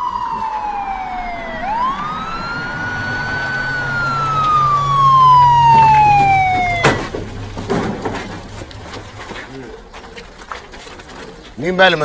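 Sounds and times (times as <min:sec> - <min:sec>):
police siren wailing: 0:00.0 - 0:08.5.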